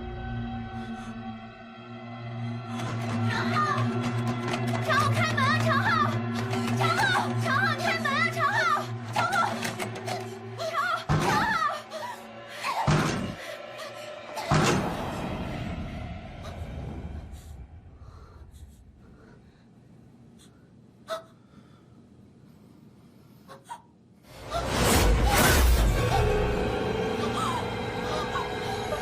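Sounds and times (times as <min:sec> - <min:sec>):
horror music heavy hits: 0:08.9 - 0:16.8, 0:24.3 - 0:29.0.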